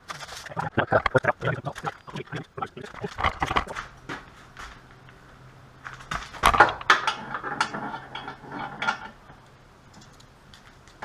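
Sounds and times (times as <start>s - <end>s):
metal clinking and scraping: 5.9s - 9.2s.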